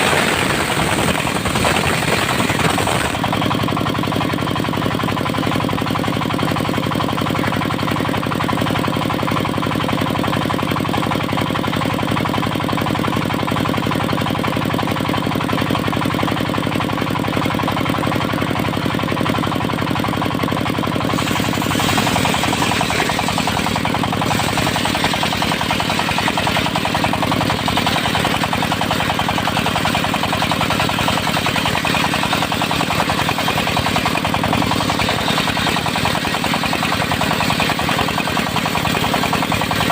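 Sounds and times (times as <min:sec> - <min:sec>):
sawmill engine knocking: 0:00.0 - 0:39.9
saw blade cutting wood: 0:21.1 - 0:31.9.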